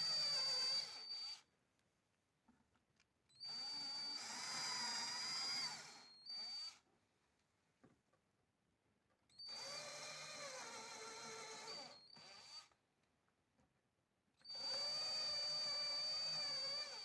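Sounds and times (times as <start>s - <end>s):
electric drill whining: 0.0s - 1.5s, 3.4s - 6.8s, 9.4s - 12.8s, 14.4s - 17.0s.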